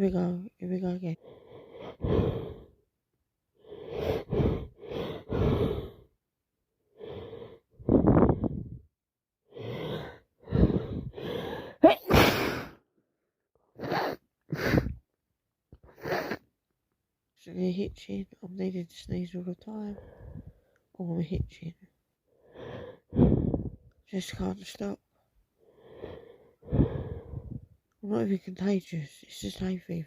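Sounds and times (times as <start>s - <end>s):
woman gasping in-breaths: 9.6s - 12.8s, 14.5s - 15.0s, 19.9s - 20.7s, 22.4s - 23.9s, 25.6s - 27.7s
woman sneezing: 11.8s - 12.8s.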